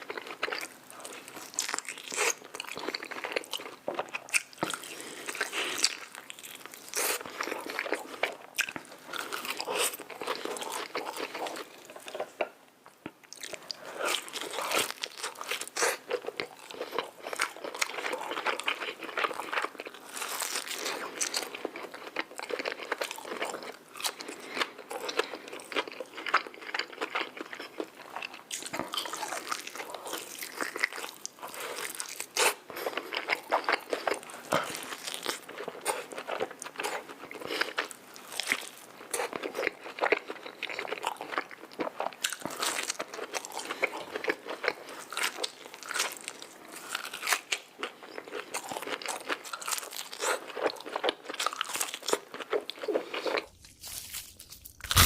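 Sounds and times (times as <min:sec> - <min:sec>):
crunchy bites and chewing: 0:00.0 - 0:12.4, 0:13.3 - 0:55.0.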